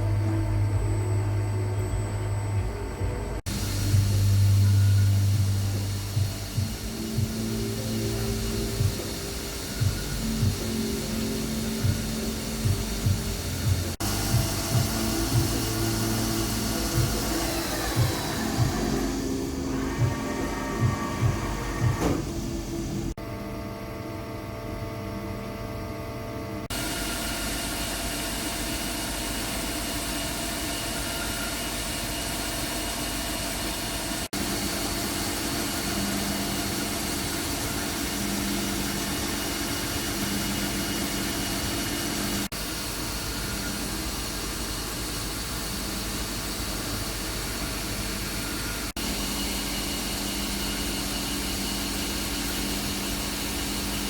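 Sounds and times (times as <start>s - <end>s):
machine tool hum and whine: 0.0s - 54.0s.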